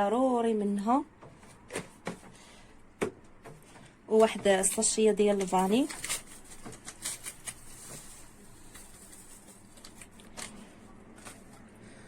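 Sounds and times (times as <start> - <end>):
faint paper rustling: 3.6 - 12.0.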